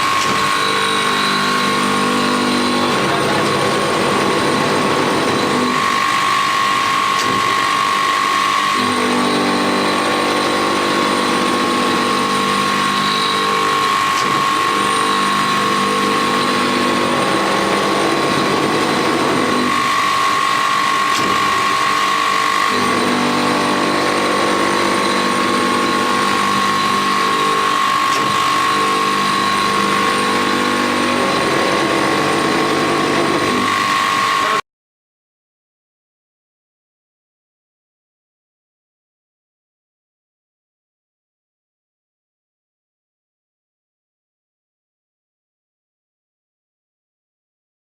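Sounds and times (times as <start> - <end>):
sharpening machine whining: 0.0 - 34.6.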